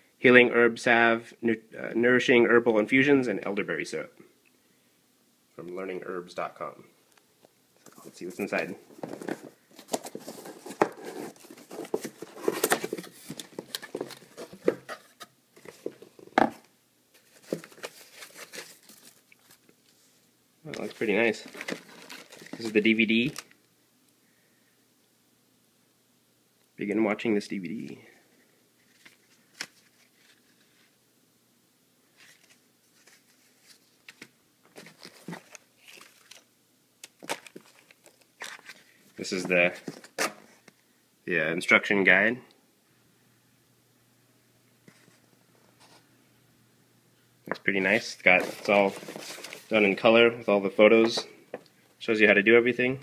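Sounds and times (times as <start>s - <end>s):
packaging rustling and crinkling: 7.8s - 20.0s, 20.7s - 23.6s, 32.2s - 40.6s, 48.2s - 50.0s.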